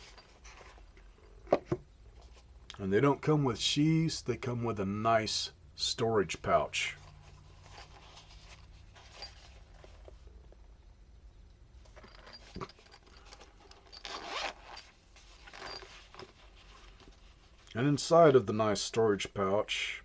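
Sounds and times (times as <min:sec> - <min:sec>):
fabric handling rustle: 0:07.0 - 0:10.3, 0:11.8 - 0:17.8.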